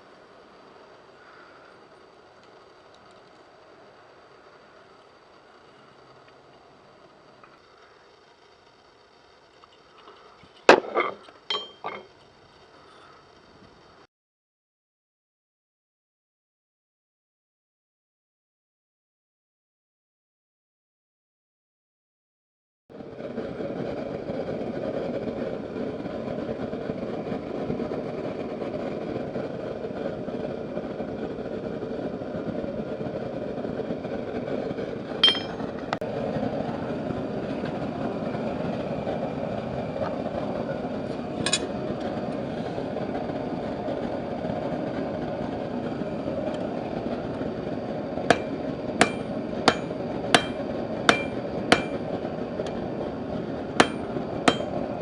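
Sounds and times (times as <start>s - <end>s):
hammer clanging on steel anvil: 10.7s - 12.0s, 35.2s - 35.6s, 48.3s - 52.0s, 53.8s - 54.8s
forge roaring: 22.9s - 55.0s.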